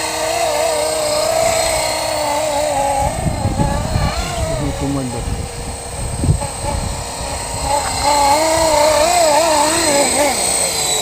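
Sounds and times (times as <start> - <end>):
rc helicopter motor whine: 0.0 - 11.0
rotor note wavering: 0.0 - 11.0
wind rumble on microphone: 1.4 - 10.2.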